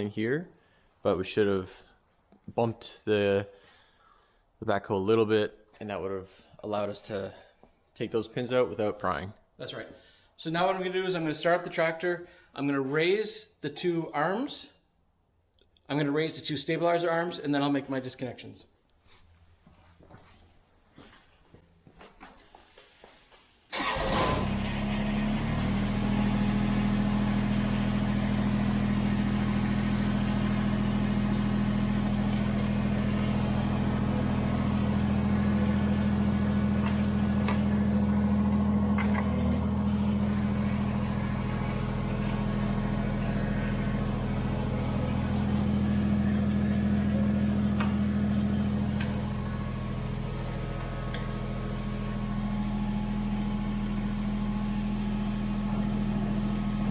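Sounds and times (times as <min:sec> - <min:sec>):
tractor diesel engine starting and idling: 0:23.7 - 0:56.9.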